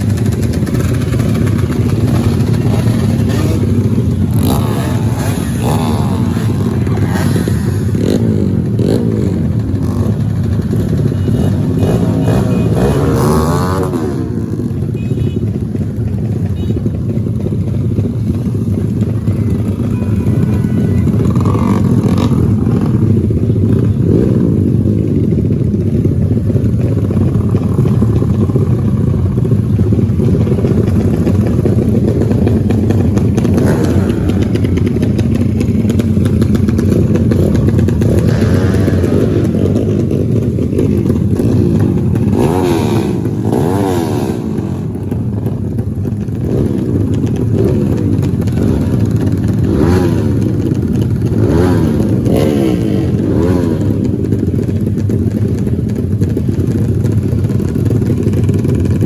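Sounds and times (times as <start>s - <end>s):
race motorcycle engines revving: 0.0s - 59.0s.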